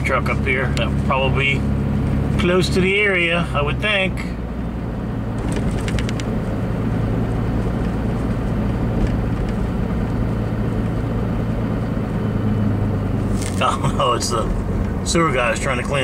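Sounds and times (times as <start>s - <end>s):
road noise: 0.0s - 16.0s
truck engine hum: 0.0s - 16.0s.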